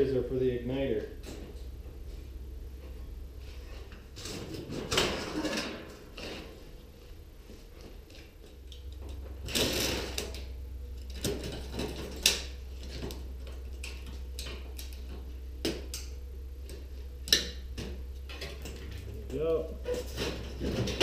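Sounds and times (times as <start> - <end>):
low steady hum: 0.0 - 21.0
sheet metal clanking: 4.1 - 6.6.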